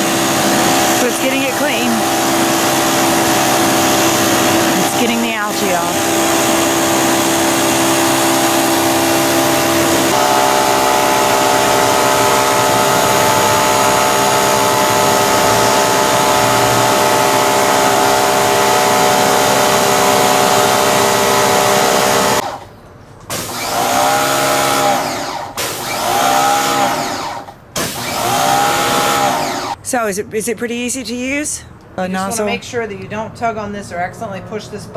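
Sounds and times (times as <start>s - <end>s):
short uneven bursts: 0.0s - 22.6s
pressure washer motor whine: 0.0s - 22.7s, 23.3s - 29.8s.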